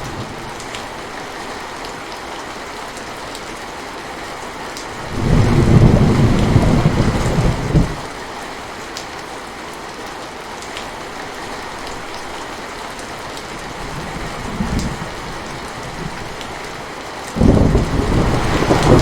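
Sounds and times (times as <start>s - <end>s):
steady rain falling: 0.0s - 19.0s
thunder rumbling: 5.0s - 8.1s, 13.6s - 16.7s, 17.4s - 19.0s.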